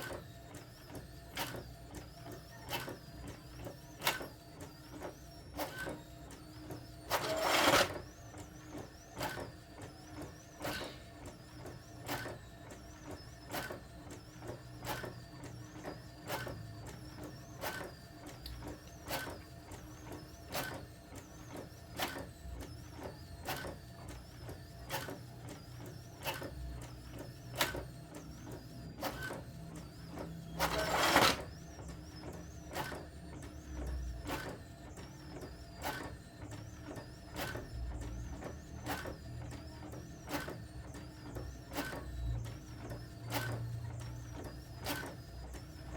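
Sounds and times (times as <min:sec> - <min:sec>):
printer mechanical hum: 0:00.0 - 0:45.9
printer noisy bursts: 0:00.0 - 0:45.9
printer clicks: 0:07.1 - 0:08.0, 0:30.6 - 0:31.5.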